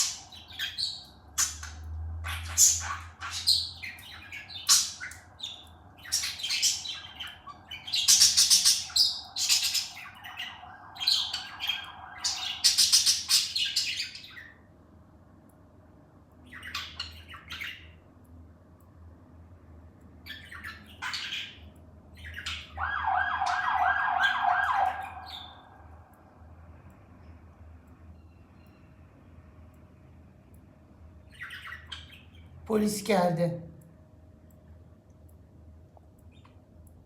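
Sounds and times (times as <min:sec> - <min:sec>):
parrot squawking and chirping: 0:00.0 - 0:14.7, 0:16.4 - 0:18.0, 0:20.2 - 0:26.0, 0:31.2 - 0:32.6.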